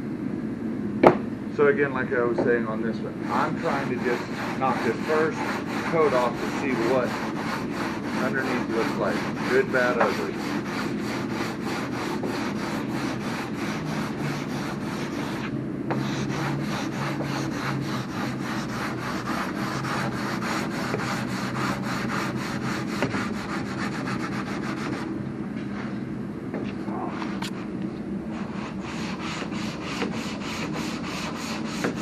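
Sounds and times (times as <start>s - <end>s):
steady low hum: 0.0s - 32.0s
sandpaper rubbing back and forth: 3.2s - 25.1s, 28.3s - 32.0s.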